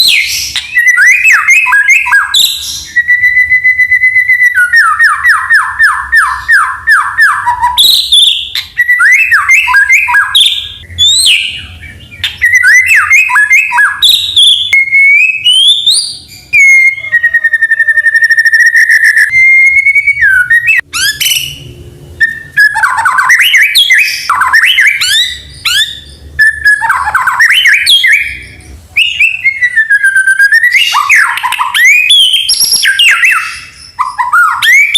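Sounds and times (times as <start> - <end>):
songbird singing whistles: 0.0 - 34.9.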